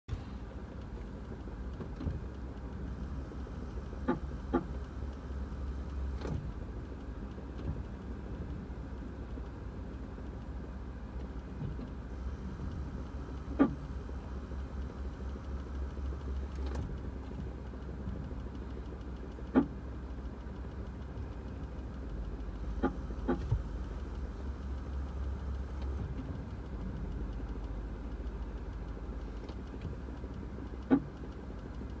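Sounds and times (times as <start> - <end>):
brake actuator chirping: 13.1 - 32.0.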